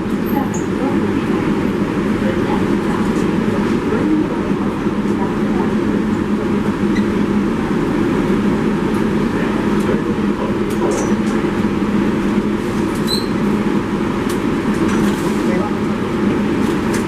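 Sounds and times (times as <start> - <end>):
subway train rumble: 0.0 - 17.0
wheels squealing on rails: 13.0 - 13.4.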